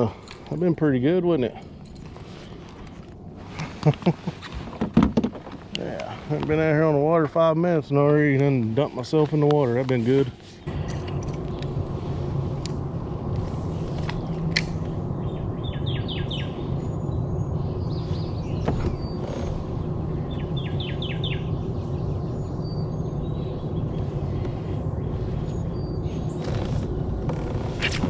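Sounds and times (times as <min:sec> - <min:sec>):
low rumbling hum: 0:00.0 - 0:28.0
songbird chirping: 0:14.0 - 0:27.5.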